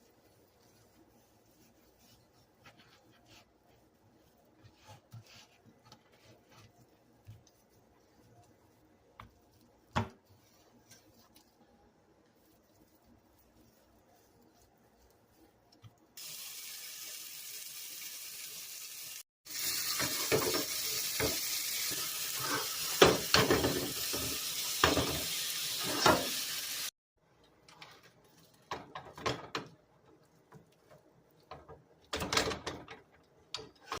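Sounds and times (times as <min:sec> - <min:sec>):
steak sizzling in a pan: 0:16.2 - 0:26.9.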